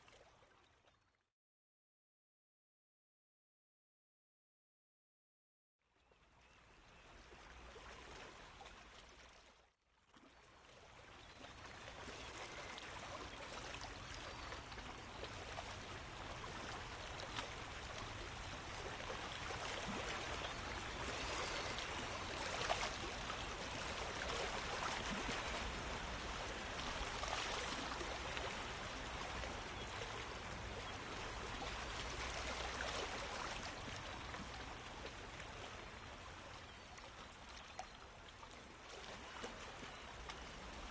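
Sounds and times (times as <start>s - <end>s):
stream water flowing: 10.9s - 40.9s.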